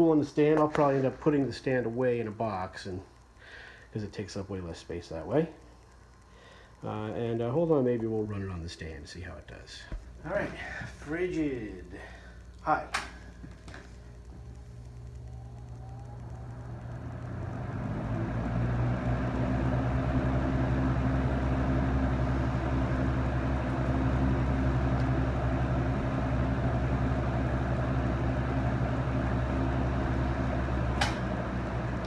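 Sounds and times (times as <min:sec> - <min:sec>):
box fan motor hum: 0:09.4 - 0:32.0.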